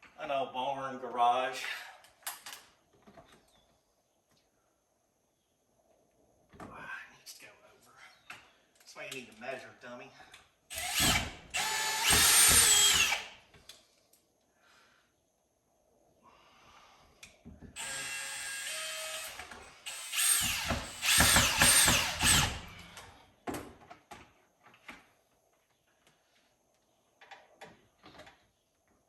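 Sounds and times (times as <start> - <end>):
power drill driving screws: 10.7 - 13.4, 17.8 - 23.1.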